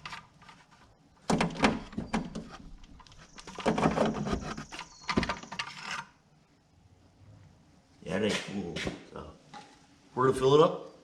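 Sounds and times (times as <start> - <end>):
objects knocking and clattering: 0.0 - 6.1.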